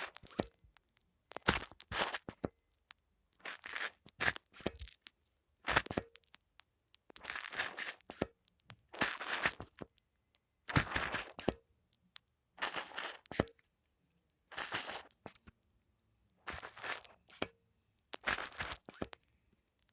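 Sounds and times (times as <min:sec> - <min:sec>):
foam crunching when squeezed: 0:01.4 - 0:02.4, 0:03.4 - 0:05.0, 0:07.2 - 0:08.2, 0:08.9 - 0:09.8, 0:10.7 - 0:11.6, 0:12.6 - 0:13.4, 0:14.6 - 0:15.3, 0:16.5 - 0:17.4, 0:18.2 - 0:19.1.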